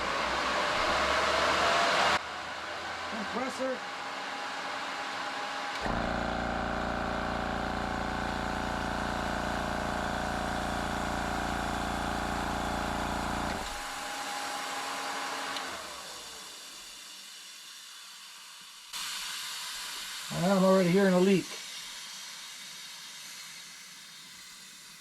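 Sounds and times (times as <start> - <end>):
cooling fan humming: 2.4 - 14.1
compressor motor humming: 3.1 - 17.0.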